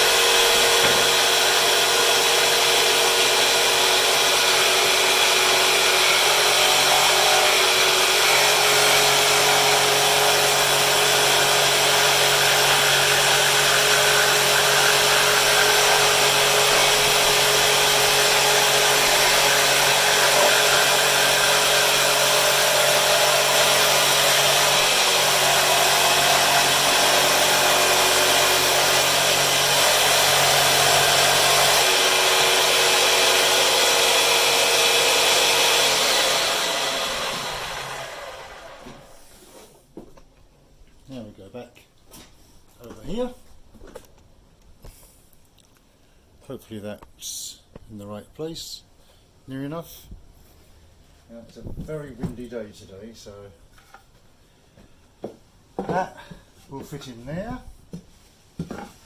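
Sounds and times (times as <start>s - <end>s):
jigsaw cutting wood: 0.0s - 39.2s.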